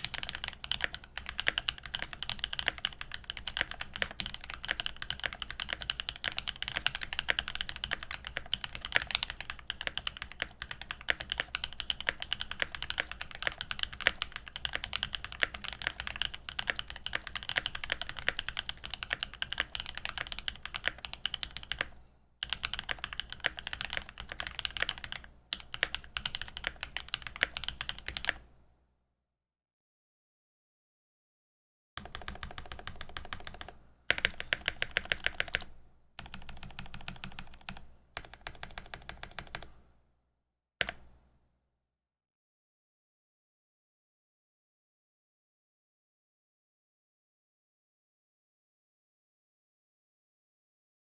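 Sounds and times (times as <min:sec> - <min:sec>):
fast typing on mechanical keyboard: 0:00.0 - 0:28.4, 0:32.0 - 0:39.7.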